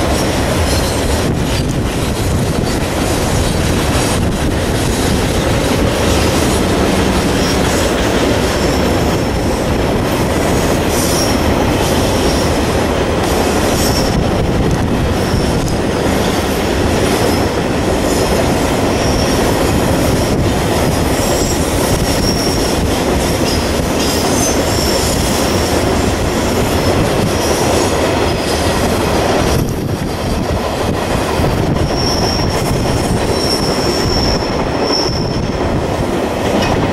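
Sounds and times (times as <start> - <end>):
train running on rails: 0.0 - 36.9
high wheel squeal: 19.0 - 19.5, 21.2 - 22.8, 31.8 - 35.6.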